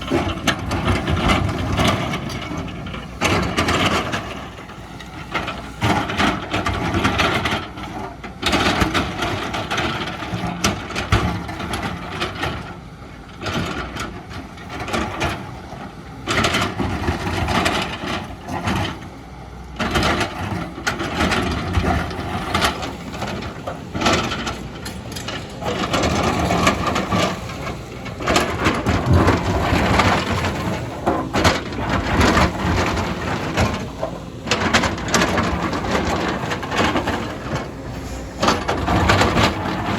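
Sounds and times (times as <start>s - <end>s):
excavator engine under load: 0.0s - 39.9s
bucket scraping soil and rock: 25.4s - 39.9s.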